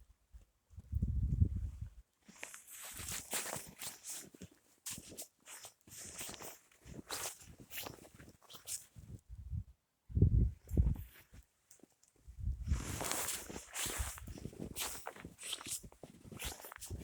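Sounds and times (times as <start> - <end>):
footsteps crunching in snow: 2.3 - 9.1, 12.6 - 17.0.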